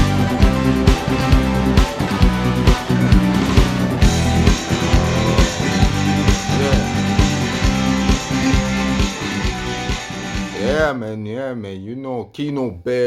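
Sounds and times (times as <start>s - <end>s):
rock song: 0.0s - 10.8s
drum beat: 0.4s - 8.6s.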